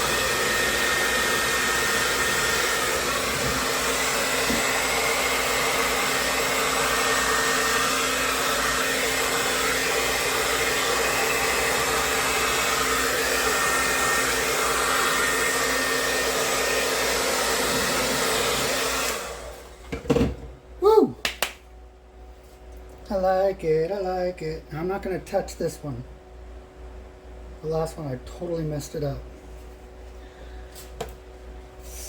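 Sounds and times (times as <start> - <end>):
blow dryer running: 0.0 - 21.2.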